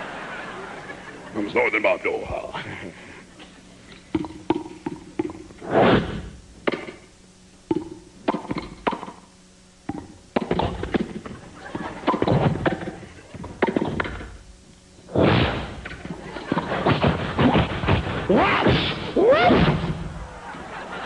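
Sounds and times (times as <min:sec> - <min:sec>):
mouth pops and knocks: 0:04.1 - 0:05.6, 0:06.6 - 0:07.0, 0:07.7 - 0:09.2, 0:09.8 - 0:11.4.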